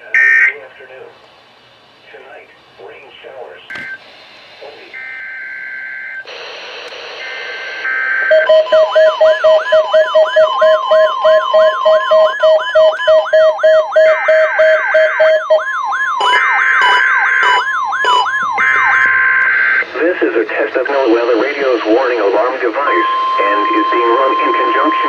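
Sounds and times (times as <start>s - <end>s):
steady alarm tone: 3.7s - 25.0s
rising alarm sweep: 7.2s - 25.0s
fast pulsed beeps: 8.0s - 25.0s.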